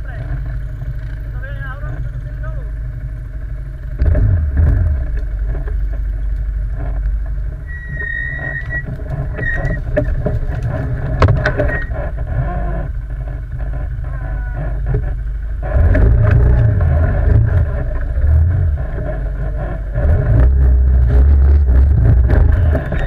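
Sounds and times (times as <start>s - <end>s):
quad bike engine running: 0.0s - 23.0s
brief high squeal: 7.7s - 9.8s.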